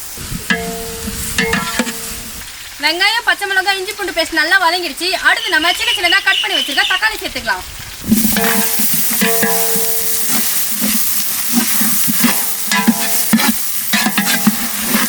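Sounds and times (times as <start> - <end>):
tomatoes sizzling in oil: 0.0 - 15.0
ladle scraping pot: 0.5 - 2.4, 8.1 - 15.0.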